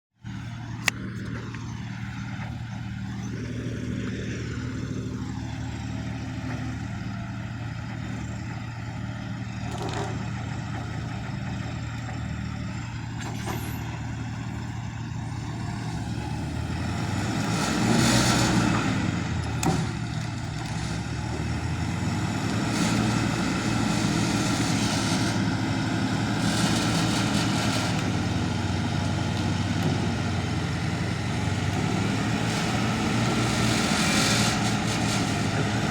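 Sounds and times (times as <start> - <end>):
heavy vehicle engines humming: 0.2 - 35.9.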